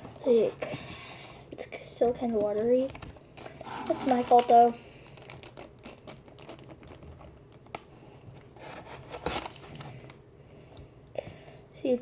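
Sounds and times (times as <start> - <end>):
stirring watery mix in plastic bin: 1.9 - 4.8, 5.4 - 7.7.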